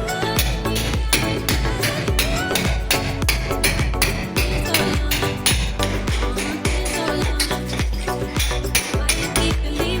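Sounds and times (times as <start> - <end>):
dance music with fast beat: 0.0 - 10.0.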